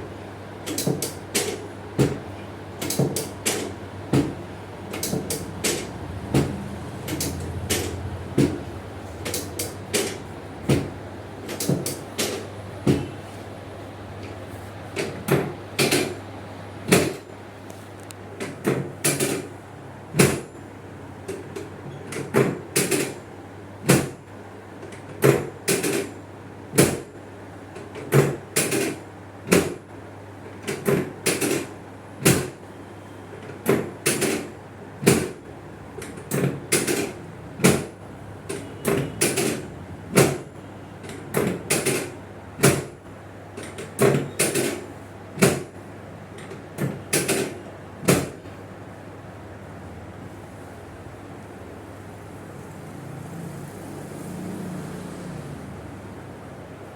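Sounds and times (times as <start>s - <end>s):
steady low hum: 0.0s - 54.0s
sharp knocks: 2.9s - 4.4s, 5.0s - 8.7s, 9.3s - 13.2s.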